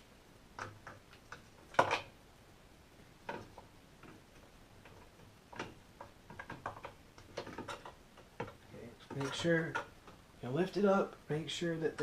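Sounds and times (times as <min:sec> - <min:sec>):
plastic clicks and knocks: 0:03.2 - 0:10.2.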